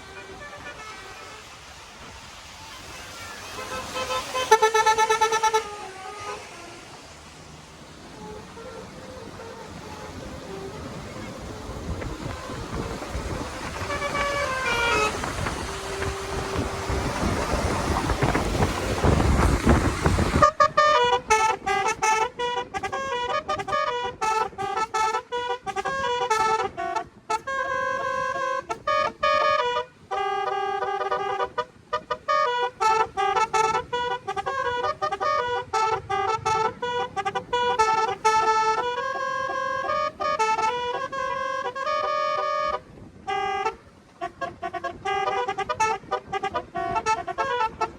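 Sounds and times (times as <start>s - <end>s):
multi-tone car horn melody: 0.0s - 7.2s, 7.8s - 47.9s
road and wind noise: 0.0s - 47.9s.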